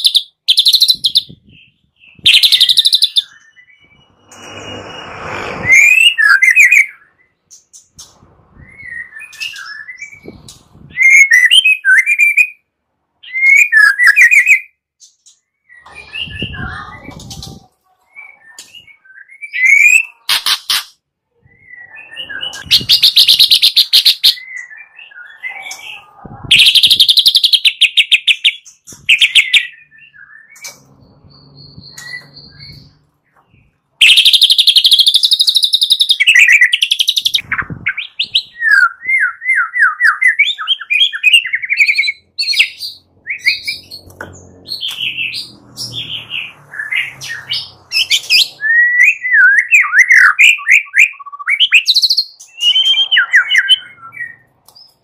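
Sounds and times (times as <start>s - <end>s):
bird whistling and chattering: 0.0s - 4.9s, 5.6s - 7.1s, 8.6s - 12.6s, 13.2s - 14.7s, 18.2s - 30.8s, 34.0s - 43.9s, 44.7s - 54.5s.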